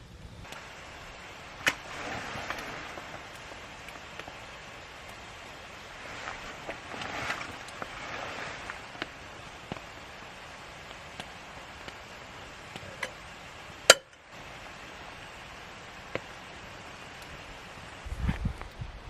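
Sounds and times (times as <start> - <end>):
campfire crackling and popping: 0.0 - 18.8.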